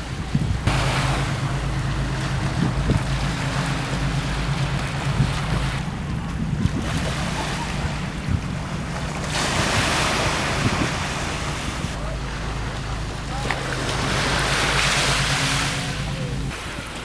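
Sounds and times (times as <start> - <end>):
wind buffeting microphone: 0.0 - 16.8
rushing sea water: 0.0 - 17.0
steady low hum: 0.0 - 17.0.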